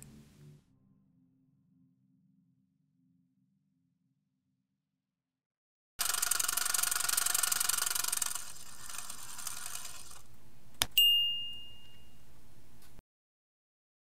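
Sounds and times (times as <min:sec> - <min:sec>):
rapid mechanical ticking: 0:06.0 - 0:10.3
bright ding: 0:11.0 - 0:12.2.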